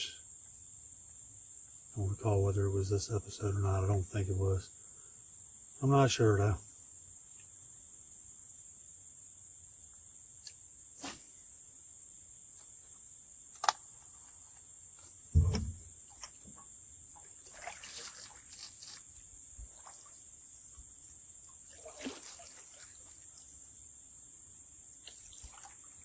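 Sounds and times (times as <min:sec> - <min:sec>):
steady high hiss: 0:00.0 - 0:26.0
light clicks: 0:13.6 - 0:13.9
dull thump against hull: 0:15.4 - 0:15.9.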